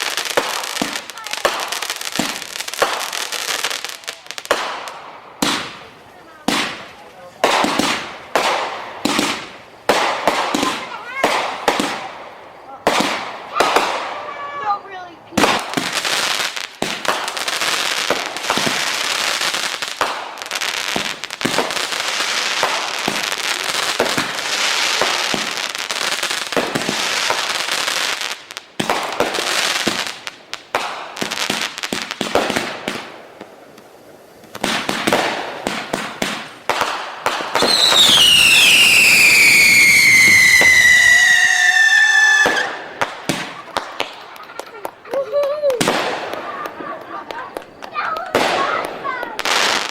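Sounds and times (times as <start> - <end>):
fireworks crackling and banging: 0.0 - 49.9
falling firework whistle: 34.7 - 48.8.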